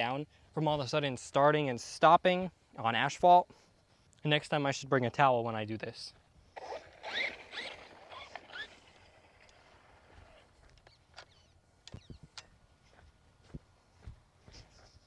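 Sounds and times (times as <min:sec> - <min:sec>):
electric motor whining: 0:06.6 - 0:09.2.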